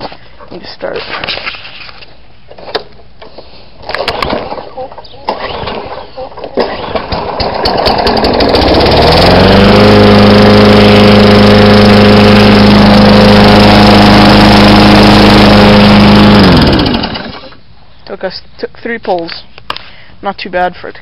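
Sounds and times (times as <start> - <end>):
lawn mower engine starting and running: 2.5 - 17.7.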